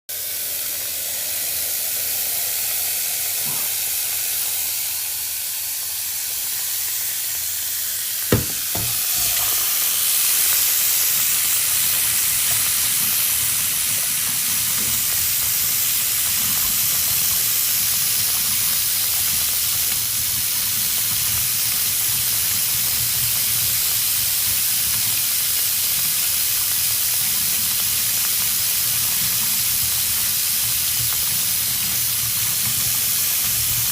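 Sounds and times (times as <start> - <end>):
sharp knock: 8.3 - 9.0.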